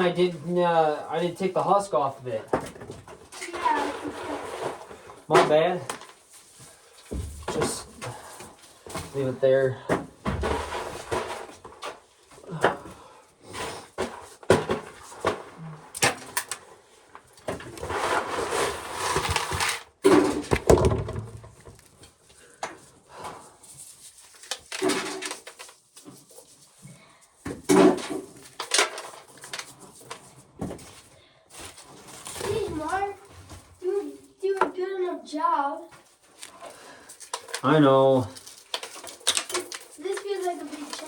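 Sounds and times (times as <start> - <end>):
corn ears knocking and clattering: 7.1 - 12.8, 19.1 - 22.6.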